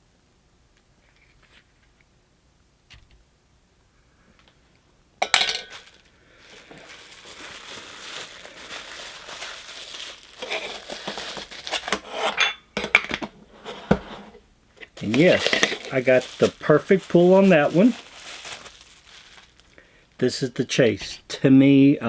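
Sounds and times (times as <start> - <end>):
can clinks: 5.2 - 6.0
plastic wrapping crinkling: 5.3 - 12.1, 14.8 - 20.2.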